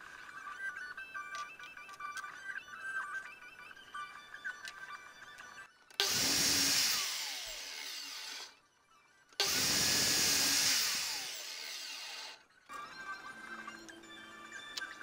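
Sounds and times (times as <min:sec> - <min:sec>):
electric power tool cutting wood: 0:06.0 - 0:08.5, 0:09.4 - 0:12.4.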